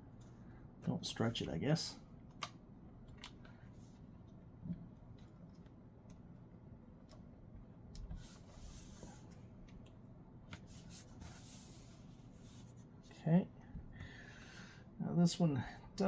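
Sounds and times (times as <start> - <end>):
light clicks of laptop parts: 2.3 - 3.6.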